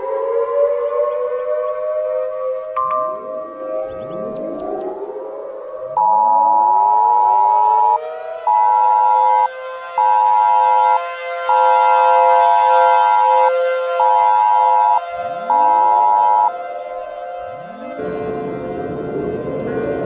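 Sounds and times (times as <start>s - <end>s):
siren wailing: 0.0s - 20.0s
second siren winding up: 6.0s - 16.6s.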